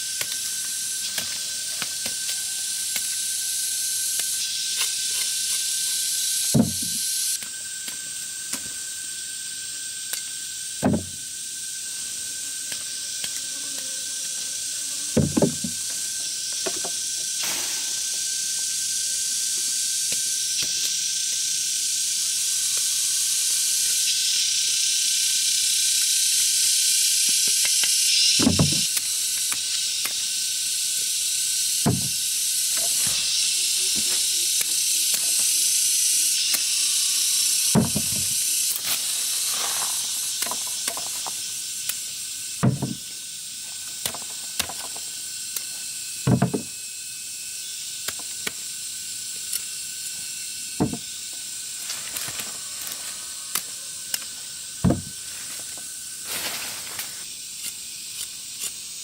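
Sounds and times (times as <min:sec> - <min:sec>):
high-pitched hiss: 0:00.0 - 0:59.0
knocks and thumps: 0:06.6 - 0:07.0, 0:10.8 - 0:11.2, 0:15.2 - 0:15.8, 0:28.4 - 0:28.9, 0:31.9 - 0:32.2, 0:37.8 - 0:38.3, 0:42.6 - 0:43.0, 0:46.3 - 0:46.7, 0:50.8 - 0:51.0, 0:54.8 - 0:55.1.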